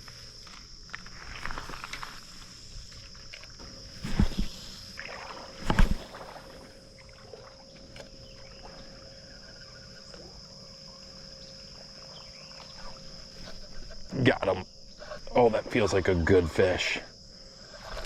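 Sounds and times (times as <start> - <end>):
insects droning: 0.0 - 18.0.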